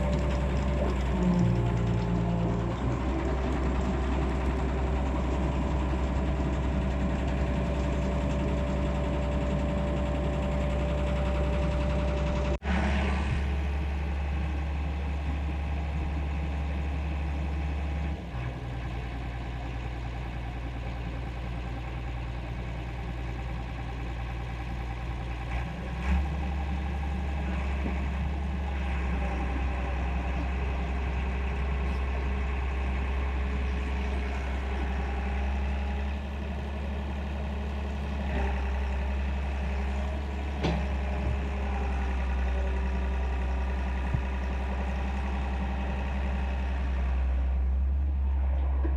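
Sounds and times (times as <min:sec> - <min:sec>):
excavator diesel engine running: 0:00.0 - 0:48.9
short clunks: 0:40.3 - 0:41.8.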